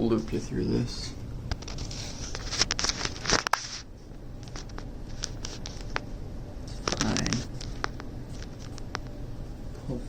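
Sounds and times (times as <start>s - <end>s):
cables rustling and clicking: 0.2s - 10.0s.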